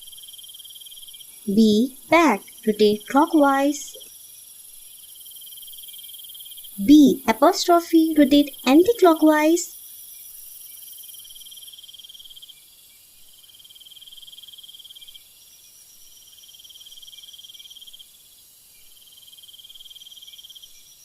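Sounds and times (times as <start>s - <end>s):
cricket trilling: 0.0s - 12.6s.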